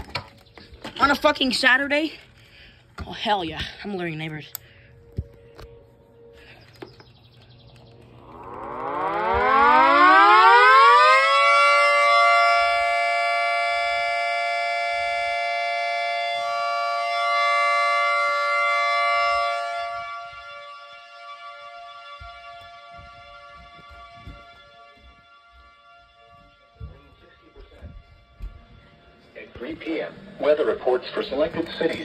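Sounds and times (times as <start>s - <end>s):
tornado warning siren wailing: 7.7s - 32.0s.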